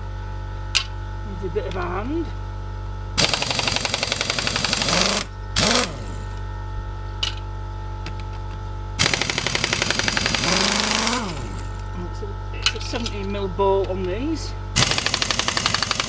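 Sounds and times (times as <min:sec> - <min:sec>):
steady hum: 0:00.0 - 0:16.0
air impact gun hammering: 0:03.2 - 0:06.3, 0:09.0 - 0:11.7, 0:14.8 - 0:16.0.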